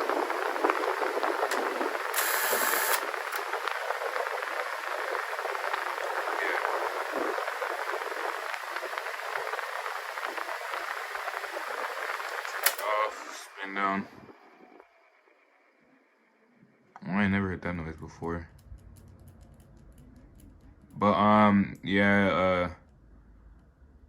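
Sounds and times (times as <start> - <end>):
wind buffeting microphone: 0.0 - 12.3
box fan rush of air: 0.0 - 13.0.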